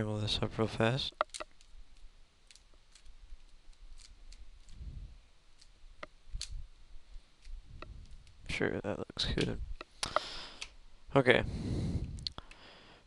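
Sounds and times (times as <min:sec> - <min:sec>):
plastic clicks of cube twisting: 0:01.1 - 0:04.8.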